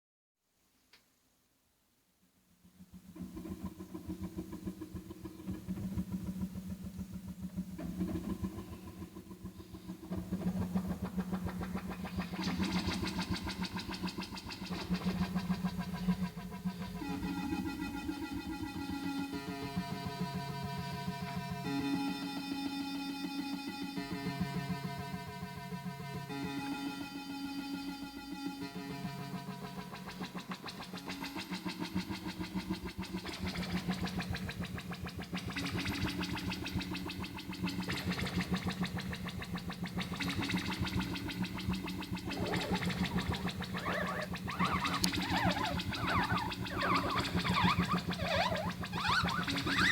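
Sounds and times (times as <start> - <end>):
low synthesizer drone: 32.2 - 49.9
fast-pulsing synth buzz: 40.2 - 49.9.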